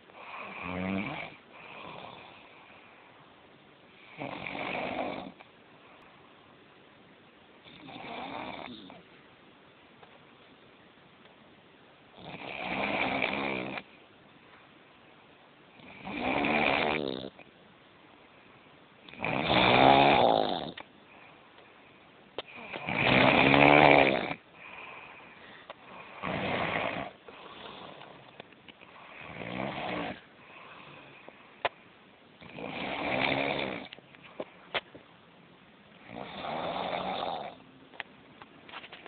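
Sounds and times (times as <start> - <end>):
man snoring: 0.2 - 2.4, 4.1 - 5.4, 7.7 - 9.0, 12.2 - 13.9, 15.8 - 17.4, 19.1 - 20.8, 22.5 - 25.0, 25.9 - 28.0, 29.0 - 30.9, 32.4 - 34.0, 36.0 - 37.6.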